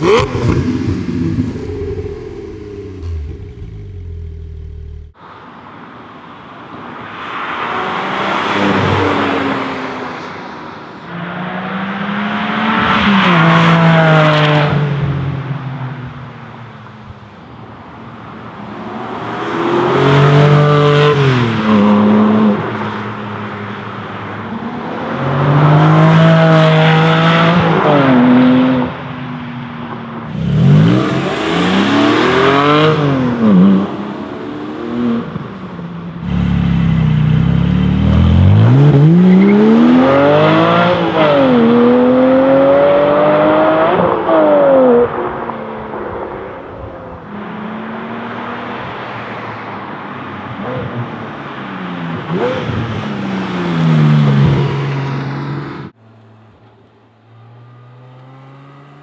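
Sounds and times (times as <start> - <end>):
stationary engine revving: 0.0 - 5.2, 30.2 - 33.3
sports car accelerating past: 24.5 - 35.5, 57.2 - 59.0.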